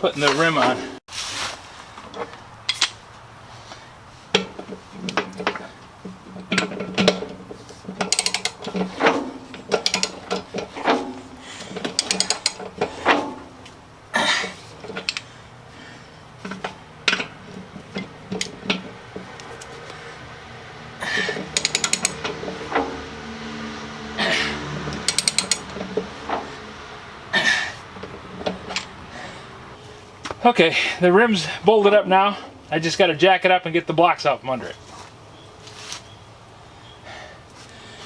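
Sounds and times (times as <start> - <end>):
wrench clinking on bolts: 2.7 - 3.0, 4.4 - 13.6, 14.8 - 15.3, 16.4 - 19.7, 21.0 - 22.5, 25.0 - 26.0.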